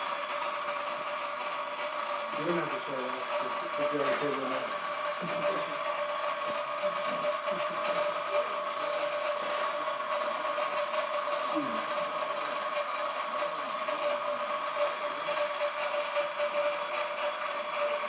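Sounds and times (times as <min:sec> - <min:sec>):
electric motor whining: 0:02.3 - 0:18.0.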